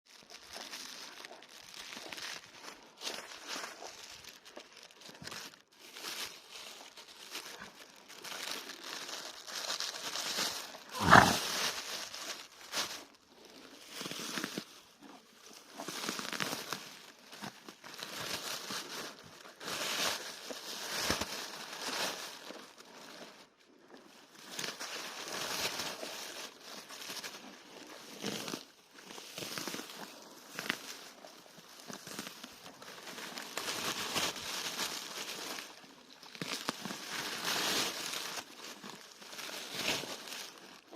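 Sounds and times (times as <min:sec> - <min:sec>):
animal chewing grass: 0:10.6 - 0:11.6
sharp snort through nose: 0:10.9 - 0:11.5.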